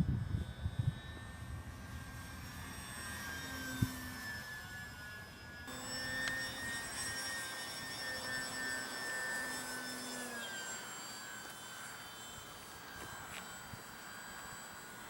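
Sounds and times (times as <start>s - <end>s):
wind buffeting microphone: 0.0s - 2.2s
model plane motor whine: 0.0s - 15.0s.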